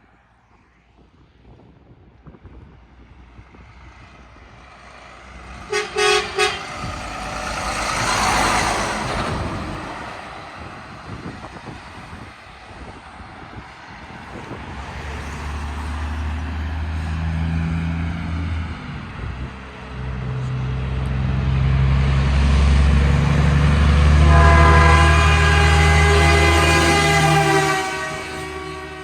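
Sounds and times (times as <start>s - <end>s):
locomotive engine rumble: 3.3s - 29.0s
train horn: 5.6s - 7.0s, 23.1s - 29.0s.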